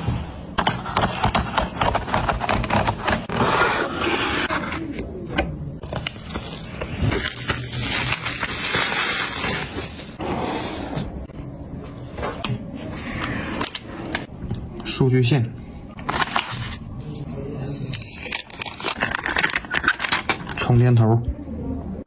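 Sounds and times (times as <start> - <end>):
packaging scraping and tearing: 0.6 - 5.0, 5.8 - 10.2, 16.0 - 20.6.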